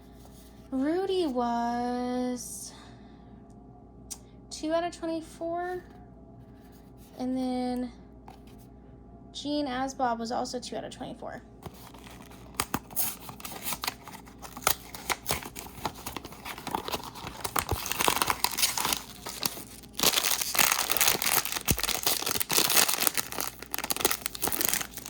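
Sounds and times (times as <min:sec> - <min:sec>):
packaging torn and crinkled: 0:11.6 - 0:25.0.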